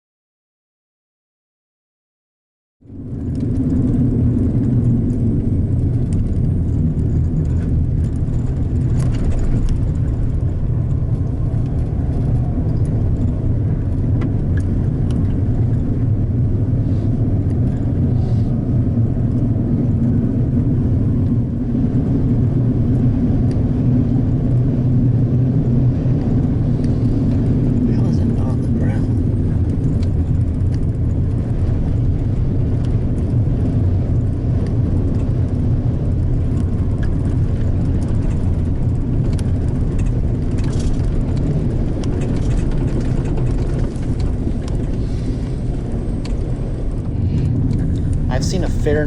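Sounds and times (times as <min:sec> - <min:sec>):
car engine rumble: 0:02.8 - 0:49.0
road noise: 0:02.8 - 0:49.0.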